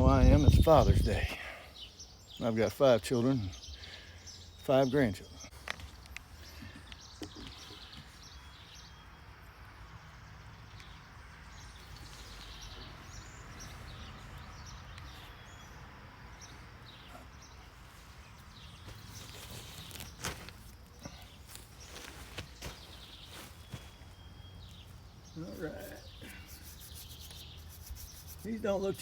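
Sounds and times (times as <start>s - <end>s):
faint bird chirps: 11.6s - 29.0s.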